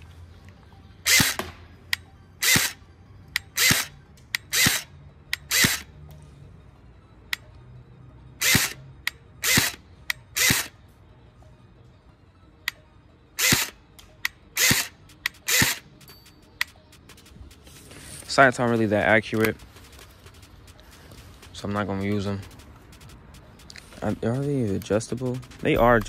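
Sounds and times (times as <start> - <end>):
airsoft gun firing whir: 1.1 - 1.6, 14.6 - 15.8.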